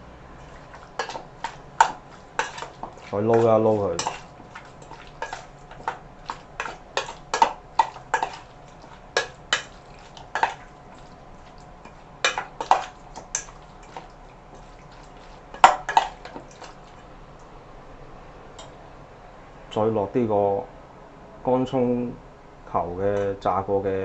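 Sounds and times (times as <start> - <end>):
utensil clinking against bowl: 0.4 - 17.0.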